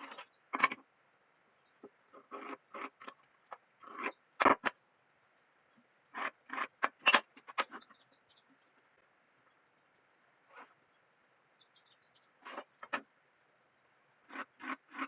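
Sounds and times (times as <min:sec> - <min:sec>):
objects knocking and scraping: 0:00.0 - 0:00.9, 0:01.8 - 0:04.8.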